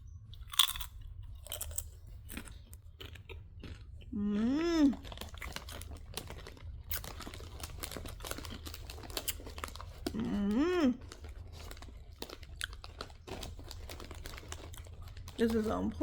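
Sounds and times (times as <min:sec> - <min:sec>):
crunching tortilla chips: 0:00.4 - 0:16.0
person humming mmm: 0:04.1 - 0:05.0, 0:10.1 - 0:11.0.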